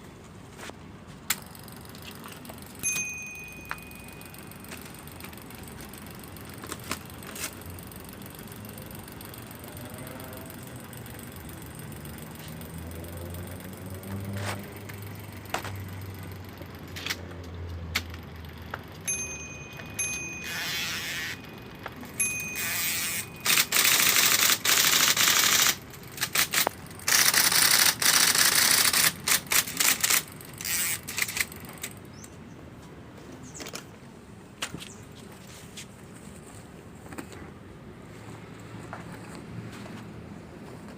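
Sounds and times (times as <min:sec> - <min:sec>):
electric typewriter typing: 0:03.8 - 0:19.1, 0:20.0 - 0:32.0.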